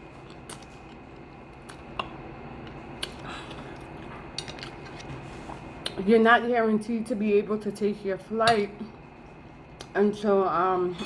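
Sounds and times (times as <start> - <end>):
wet mouth chewing: 0.2 - 6.0.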